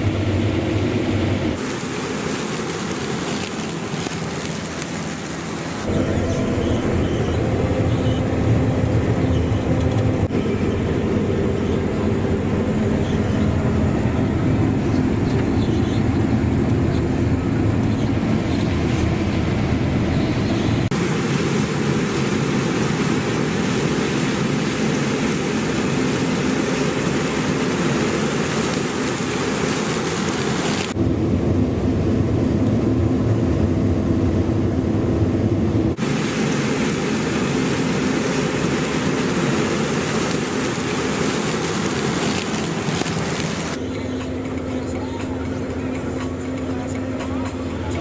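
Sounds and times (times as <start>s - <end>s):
combine harvester engine hum: 0.0s - 48.0s
hiss of machinery and crop: 1.5s - 5.9s, 20.8s - 31.0s, 36.0s - 43.8s.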